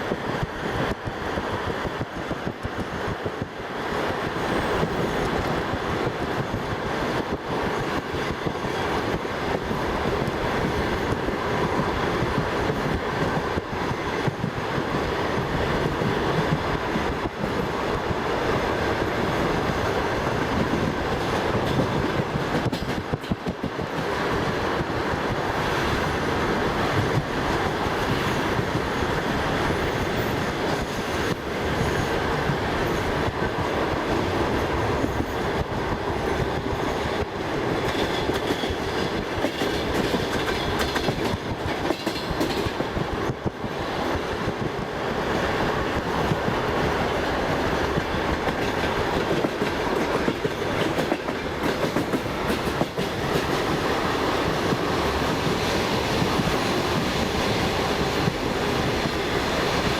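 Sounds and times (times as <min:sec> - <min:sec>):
train carriage rumble: 0:00.0 - 0:59.9
wheels clacking over rail joints: 0:20.6 - 0:24.1, 0:37.8 - 0:43.8, 0:45.9 - 0:59.9.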